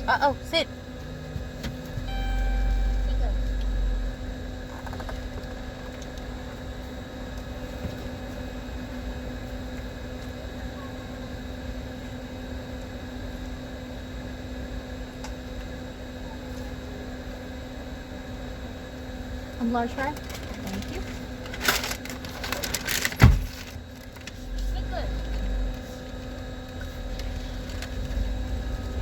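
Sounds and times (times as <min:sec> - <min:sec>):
car idling heard from inside: 0:01.9 - 0:06.0, 0:24.6 - 0:29.0.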